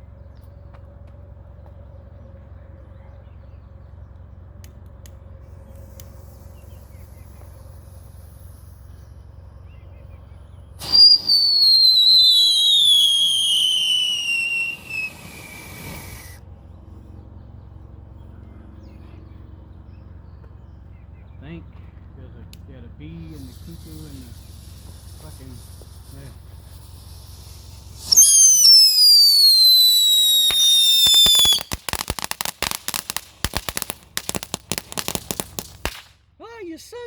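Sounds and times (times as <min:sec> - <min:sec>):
faint low hum: 0:00.0 - 0:10.8, 0:16.3 - 0:28.0
whistling firework screeching: 0:05.7 - 0:09.5, 0:10.7 - 0:16.4, 0:23.2 - 0:36.1.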